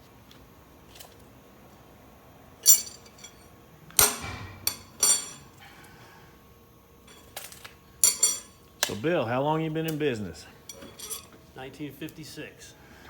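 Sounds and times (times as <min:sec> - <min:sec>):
steel parts clanking: 0:02.6 - 0:05.6, 0:07.0 - 0:09.1, 0:10.7 - 0:11.4.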